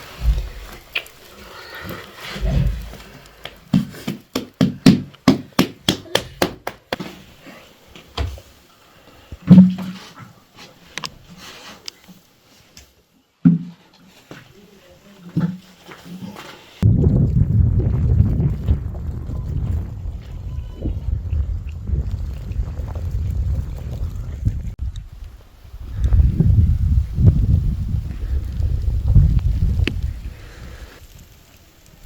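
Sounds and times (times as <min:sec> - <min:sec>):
sharp wooden knocks: 0:03.7 - 0:07.0.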